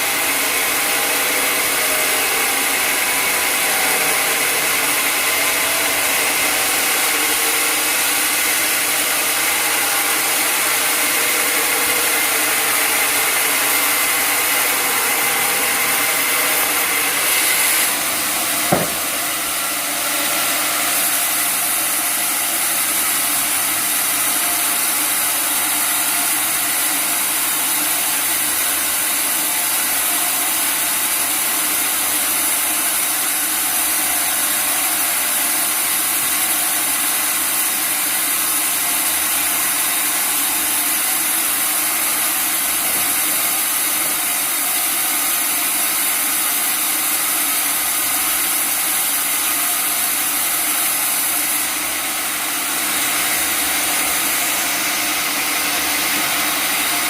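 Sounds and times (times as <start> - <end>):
sawmill motor: 0.0 - 57.0
saw blade hissing through log: 4.9 - 21.5
sharp knock: 18.7 - 19.3.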